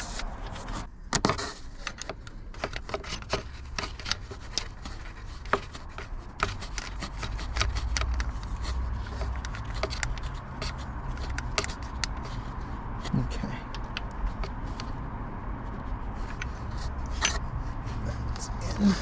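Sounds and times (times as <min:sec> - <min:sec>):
metallic clicks and scraping: 0:00.0 - 0:18.8.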